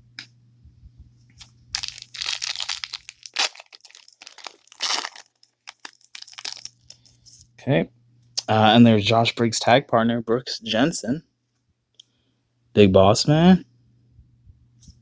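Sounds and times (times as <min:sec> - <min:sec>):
plastic wrapper crinkling: 0:01.4 - 0:07.3.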